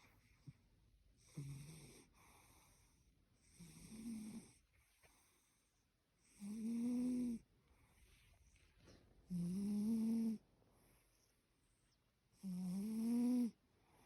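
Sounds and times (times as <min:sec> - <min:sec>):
cat snoring: 0:01.2 - 0:04.6, 0:06.2 - 0:07.5, 0:09.3 - 0:11.2, 0:12.4 - 0:14.0.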